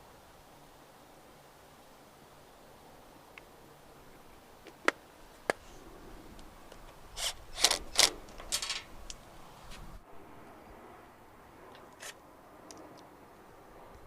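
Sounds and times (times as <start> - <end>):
sharp plastic clicks: 6.7 - 9.2.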